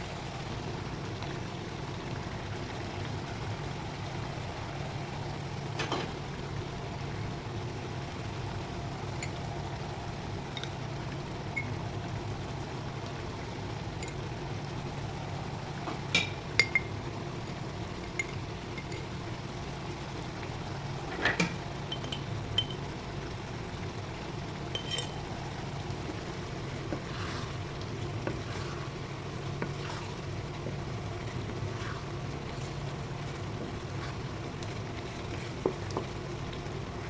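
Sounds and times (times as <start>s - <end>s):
steady low hum: 0.0s - 37.0s
metal spoon clinking on pot: 21.9s - 22.8s, 24.7s - 25.2s.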